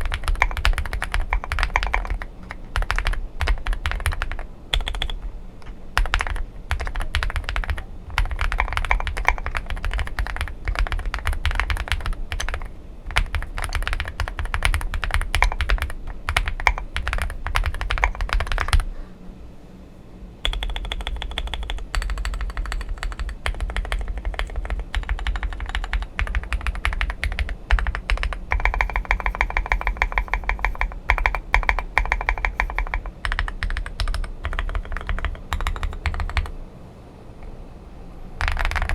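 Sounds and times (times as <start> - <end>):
mechanical keyboard typing: 0.0 - 18.9, 20.4 - 36.6, 38.4 - 38.9.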